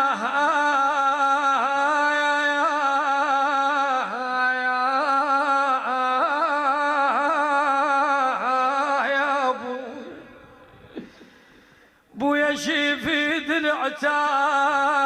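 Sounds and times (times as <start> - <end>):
man singing a lament: 0.0 - 11.2, 12.1 - 15.0
echo: 0.0 - 15.0.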